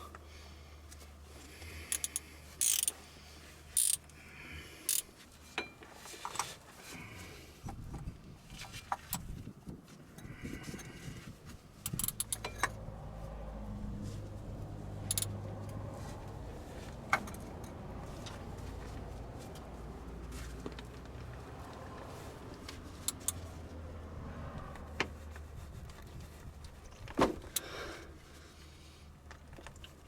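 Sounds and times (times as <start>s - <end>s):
metal hand tools clicking: 1.9s - 2.9s, 3.8s - 4.0s, 4.9s - 5.1s, 11.9s - 12.7s, 15.1s - 15.3s.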